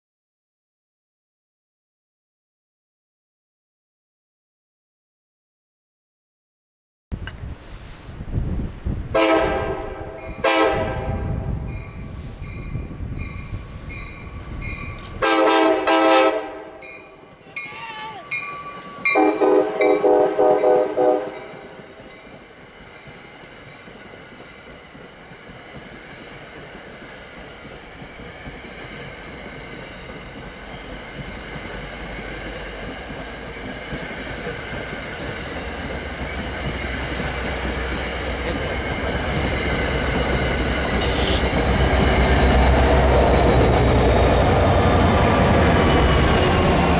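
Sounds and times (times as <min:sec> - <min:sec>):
locomotive rumble: 0:07.1 - 0:25.6, 0:27.3 - 0:46.9
train wheels on rails: 0:07.1 - 0:46.9
train horn blasts: 0:09.2 - 0:11.6, 0:15.2 - 0:17.0, 0:19.1 - 0:21.9, 0:41.0 - 0:41.6.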